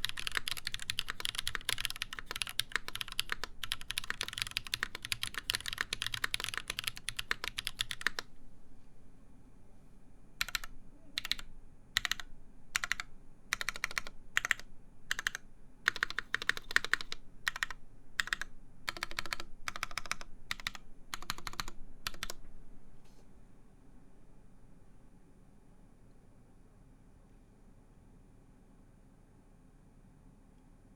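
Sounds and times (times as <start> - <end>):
typing on a mechanical keyboard: 0.0 - 8.3, 10.4 - 22.4.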